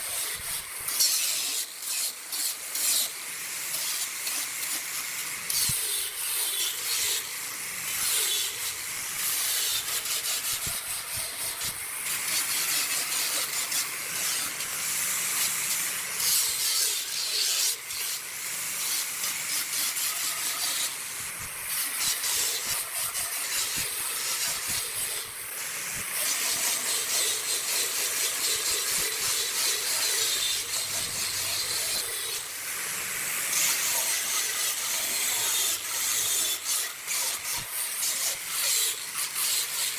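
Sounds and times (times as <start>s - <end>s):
tool scraping spinning wood: 7.9s - 25.3s, 26.1s - 32.6s.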